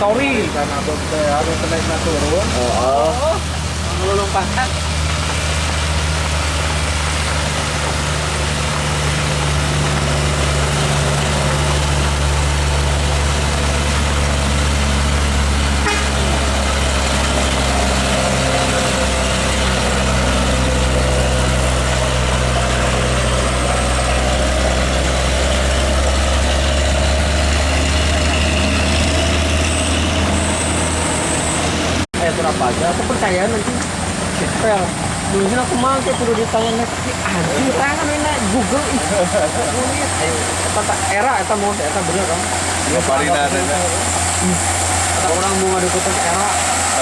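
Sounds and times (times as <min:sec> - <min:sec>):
diesel truck engine under load: 0:00.0 - 0:47.0.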